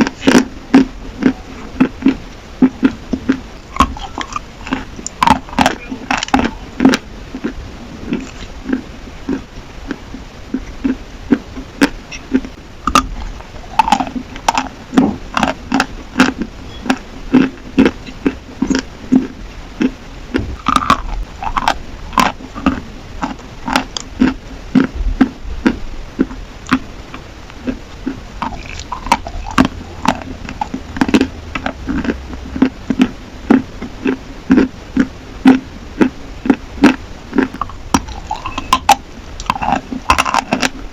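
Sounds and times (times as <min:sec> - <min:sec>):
chalk being chewed: 0:00.0 - 0:19.9, 0:20.6 - 0:24.9, 0:26.2 - 0:40.8.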